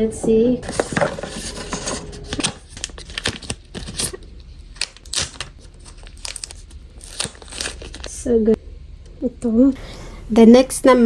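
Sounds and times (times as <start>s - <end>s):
packaging crinkling and tearing: 0.7s - 8.2s.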